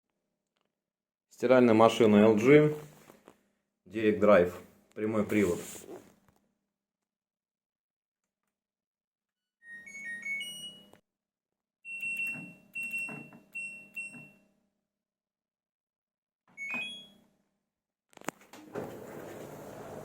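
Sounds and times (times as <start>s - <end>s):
washing machine single beeps: 11.9s - 14.5s, 16.6s - 17.2s.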